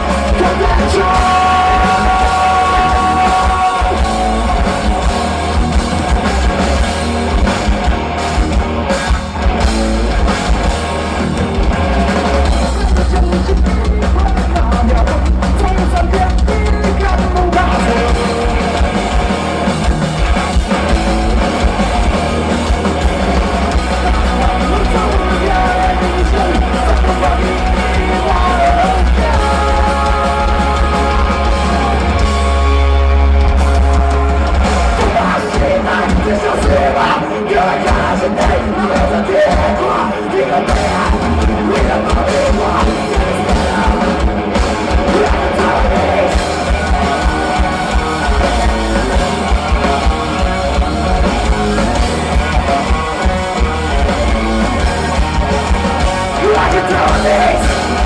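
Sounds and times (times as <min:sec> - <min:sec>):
drum kit: 0:00.0 - 0:58.0
electric guitars: 0:00.0 - 0:58.0
heavy bass: 0:00.0 - 0:58.0.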